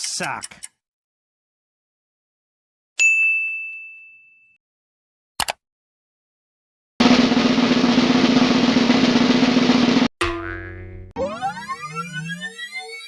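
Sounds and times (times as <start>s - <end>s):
bell-like ding: 3.0s - 4.6s
drum roll: 7.0s - 10.1s.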